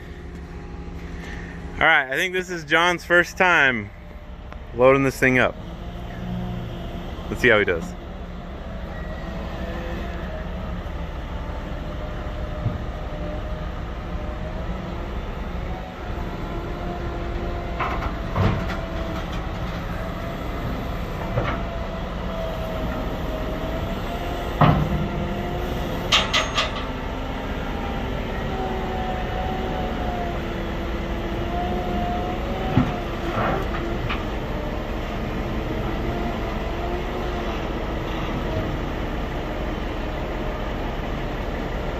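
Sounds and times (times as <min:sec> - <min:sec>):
wheel loader diesel engine: 0:00.0 - 0:41.9
sharp metal clanks: 0:26.1 - 0:27.0.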